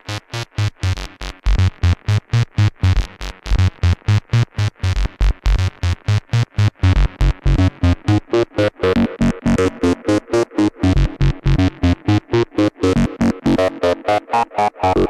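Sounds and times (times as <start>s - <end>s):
synthesizer sequenced pattern: 6.7s - 15.0s.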